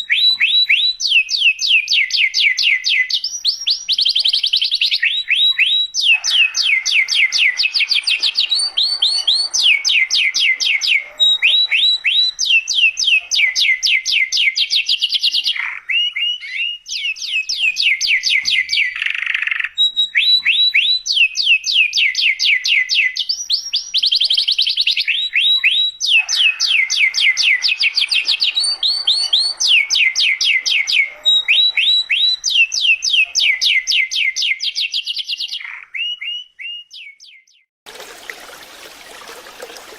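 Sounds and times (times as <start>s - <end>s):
canary singing trills: 0.0s - 37.7s.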